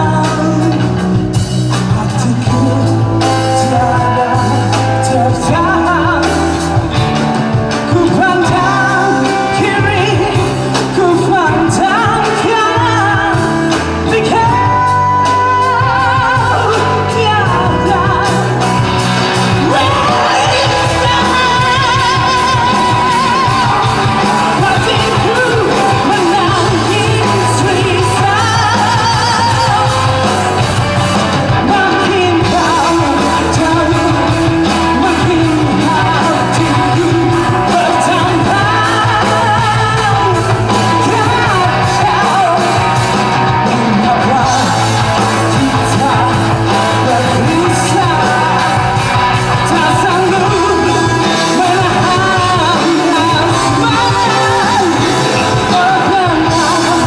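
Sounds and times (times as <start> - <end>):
live indie rock band playing: 0.0 - 57.0
person singing: 0.0 - 57.0.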